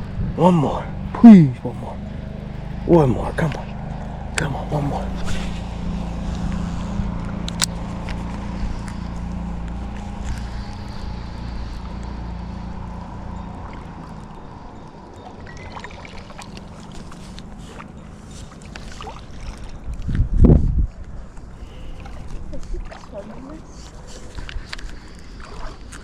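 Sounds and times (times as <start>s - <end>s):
motor humming: 0.0s - 19.4s
low background rumble: 0.0s - 26.0s.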